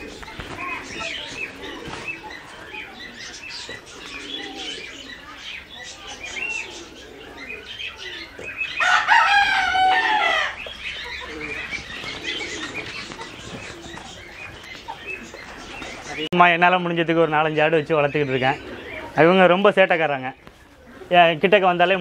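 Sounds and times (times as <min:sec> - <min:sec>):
small birds chirping: 0:00.0 - 0:22.0
rooster crowing: 0:08.8 - 0:10.6.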